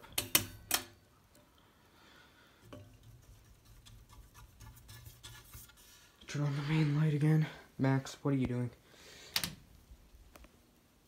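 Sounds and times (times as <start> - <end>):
ceiling fan hum: 0.0 - 11.0.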